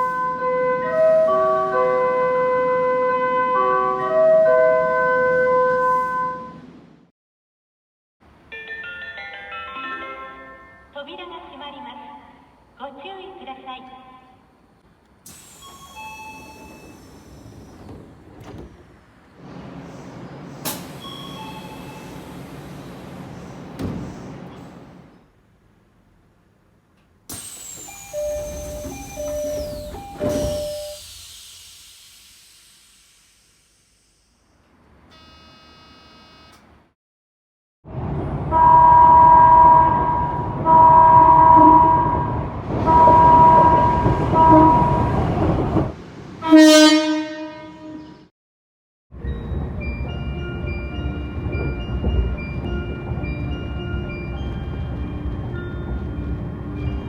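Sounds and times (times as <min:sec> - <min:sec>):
steady train noise: 0:08.3 - 0:34.0, 0:37.9 - 0:48.0, 0:49.2 - 0:57.0
train horn blasts: 0:38.5 - 0:45.2, 0:46.4 - 0:48.3.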